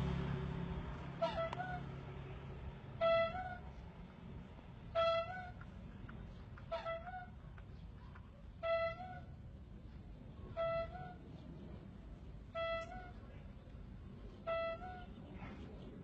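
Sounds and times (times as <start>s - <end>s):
rubber bulb horn honking: 1.2s - 1.9s, 12.5s - 13.1s.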